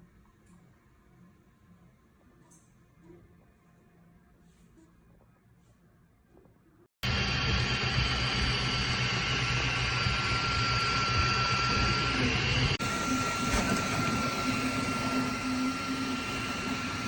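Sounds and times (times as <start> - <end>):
three-d printer whirring: 7.1 - 17.0.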